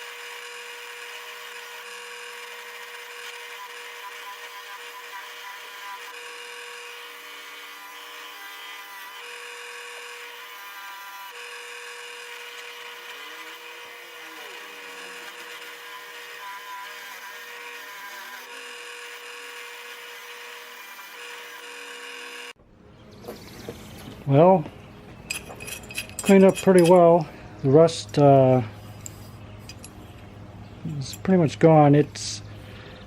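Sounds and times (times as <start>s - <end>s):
wire wheel brushing rust off metal: 0.0s - 22.4s, 25.2s - 27.2s.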